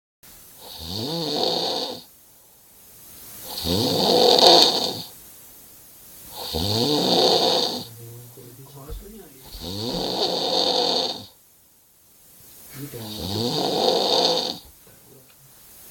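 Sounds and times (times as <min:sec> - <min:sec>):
person snoring loudly: 0:00.6 - 0:02.0, 0:03.4 - 0:05.1, 0:06.3 - 0:07.9, 0:09.4 - 0:11.3, 0:13.0 - 0:14.6.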